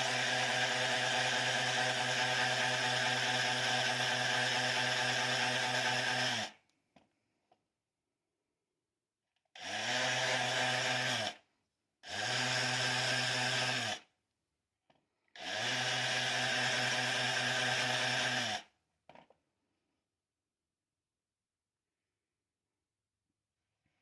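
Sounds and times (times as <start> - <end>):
electric power tool motor: 0.0 - 6.6, 9.6 - 11.4, 12.1 - 14.0, 15.4 - 18.7.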